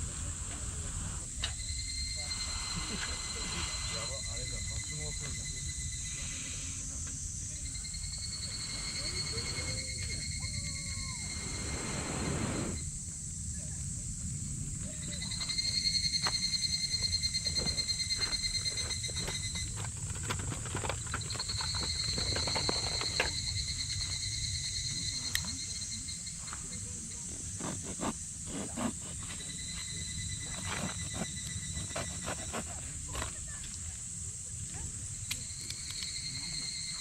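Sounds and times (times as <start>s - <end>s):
high-pitched wildlife buzz: 0.0s - 13.7s, 21.2s - 37.0s.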